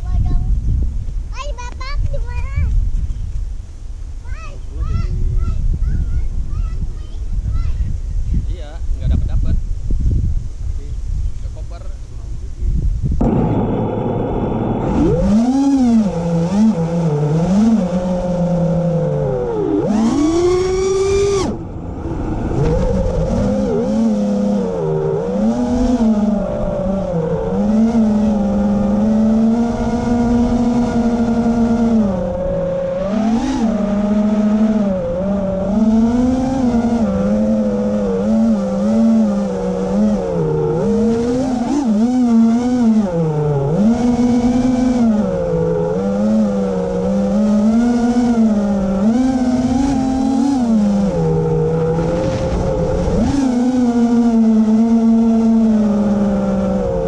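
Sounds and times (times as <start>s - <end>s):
electric propeller motors buzzing: 13.2s - 57.0s.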